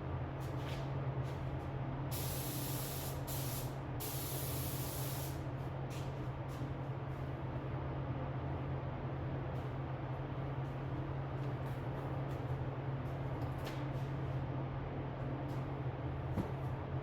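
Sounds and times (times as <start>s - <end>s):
spray paint hissing: 2.2s - 5.4s.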